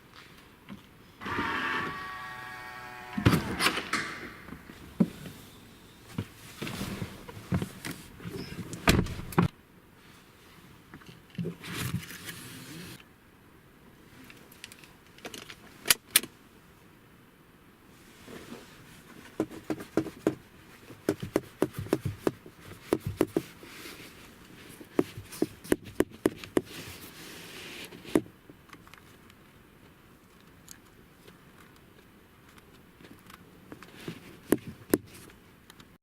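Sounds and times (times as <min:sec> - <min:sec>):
sharp clicks of hard parts: 0:03.3 - 0:04.6.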